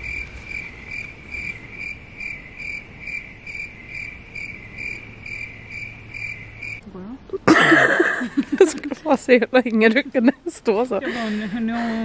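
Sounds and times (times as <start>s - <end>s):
insect chirping: 0.0s - 6.8s.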